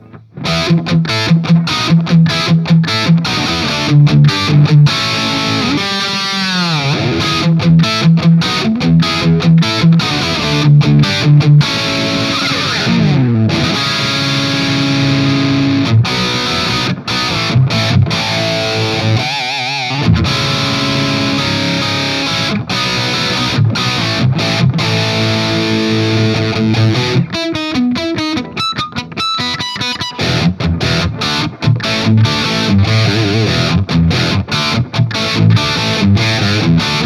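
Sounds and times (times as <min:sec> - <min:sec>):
distorted electric guitar riffs: 0:00.0 - 0:37.0.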